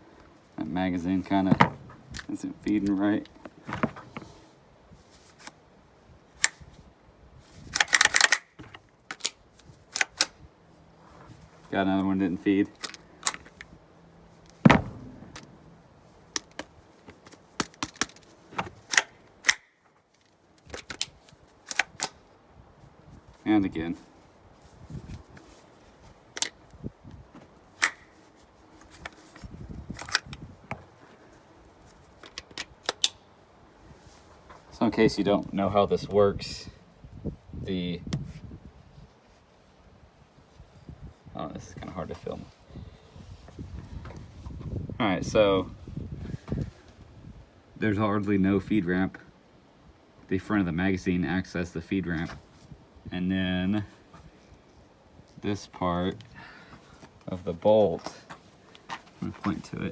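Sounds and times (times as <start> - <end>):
dull handling noise: 0.0 - 5.7, 14.4 - 22.1
pistol action rattling: 1.5 - 4.3, 7.7 - 10.4, 14.6 - 19.8
pistol metal clicks: 6.4 - 6.6, 7.7 - 10.4, 12.8 - 13.7, 17.3 - 18.3, 18.9 - 19.8, 20.6 - 22.2, 27.8 - 28.2, 32.2 - 33.3
metallic pistol clicks: 7.8 - 10.4, 18.9 - 19.8, 27.8 - 28.1.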